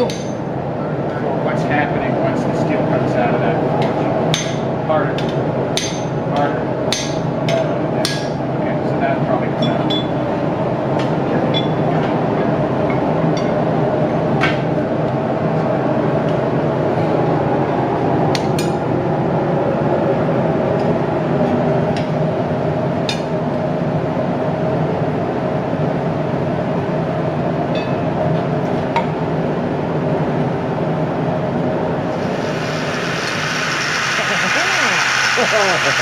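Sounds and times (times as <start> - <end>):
shop machinery droning: 0.0 - 36.0.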